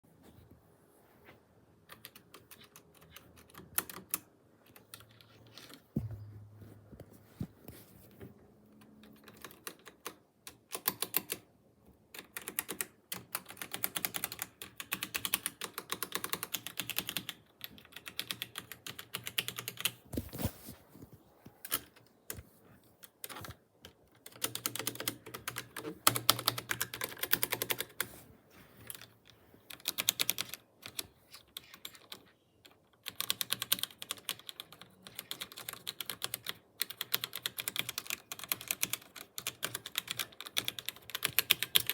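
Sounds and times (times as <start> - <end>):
keyboard typing: 1.8 - 6.4, 8.8 - 11.4, 12.1 - 20.0, 23.0 - 28.1, 29.7 - 41.9.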